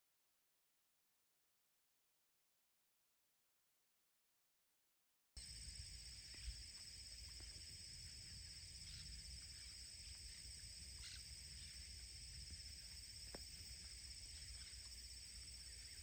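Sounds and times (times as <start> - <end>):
high-pitched insect chorus: 5.4 - 16.0.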